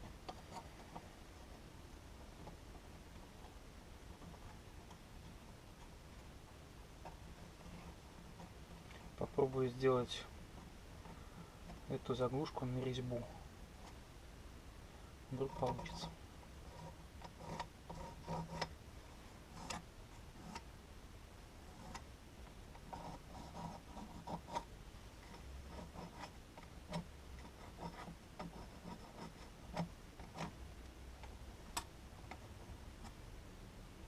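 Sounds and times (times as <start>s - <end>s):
tools scraping and rubbing: 15.3s - 18.8s, 19.4s - 20.7s, 21.6s - 22.0s, 22.7s - 30.6s.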